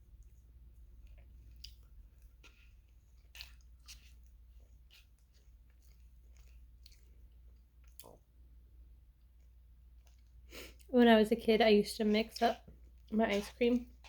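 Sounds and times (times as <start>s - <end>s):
chewing and wet mouth clicks: 1.0s - 8.3s.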